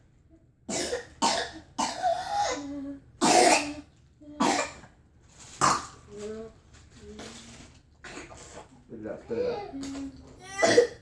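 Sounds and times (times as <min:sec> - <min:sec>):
child coughing harshly: 0:00.7 - 0:03.8, 0:04.4 - 0:04.8, 0:10.5 - 0:11.0.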